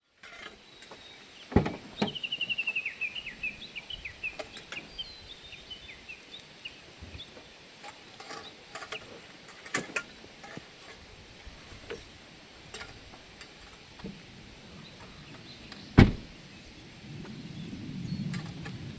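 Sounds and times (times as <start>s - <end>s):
sharp knocks: 16.0s - 16.3s.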